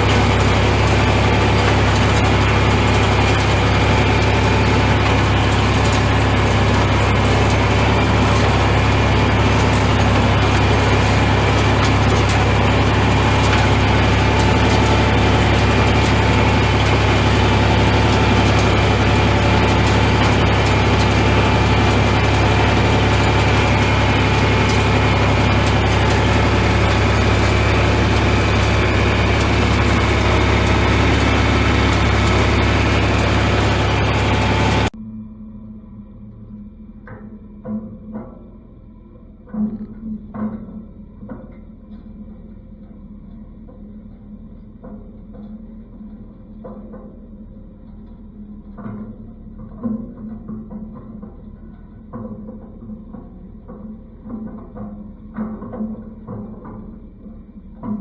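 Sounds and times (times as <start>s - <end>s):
tractor engine running: 0.0s - 35.0s.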